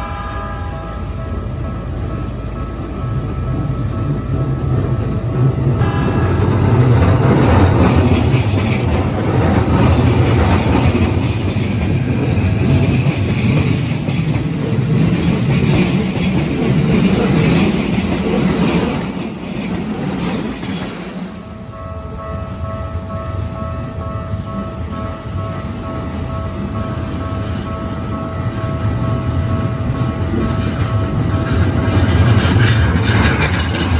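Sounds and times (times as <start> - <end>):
level crossing warning bell: 0.0 - 20.5
train wheels clacking over joints: 2.8 - 21.7, 26.8 - 33.9.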